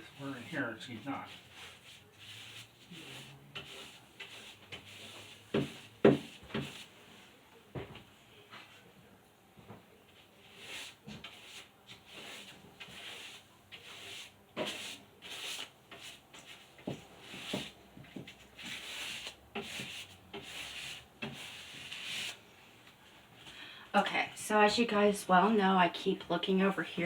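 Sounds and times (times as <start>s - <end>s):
paint roller swishing on wall: 0.0s - 7.1s, 10.2s - 22.4s.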